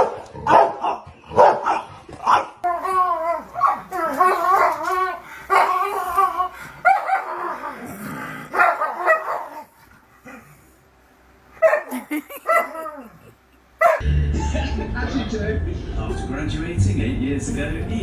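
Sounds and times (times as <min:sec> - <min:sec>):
dog wavering calls: 0:02.6 - 0:10.8, 0:11.6 - 0:14.0.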